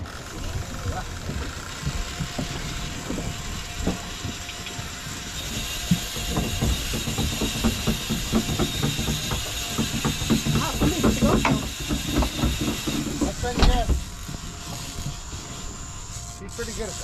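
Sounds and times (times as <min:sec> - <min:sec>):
boat engine rumble: 0:00.0 - 0:17.0
fishing reel clicking: 0:14.0 - 0:17.0.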